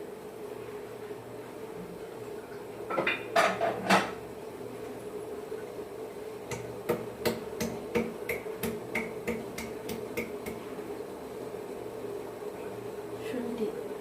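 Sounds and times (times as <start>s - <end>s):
ginger being pounded: 6.5s - 10.7s.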